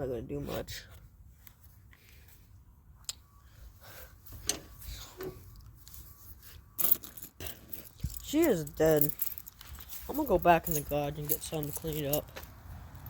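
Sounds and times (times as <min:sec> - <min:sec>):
handling clicks and rustles: 0:04.3 - 0:13.0.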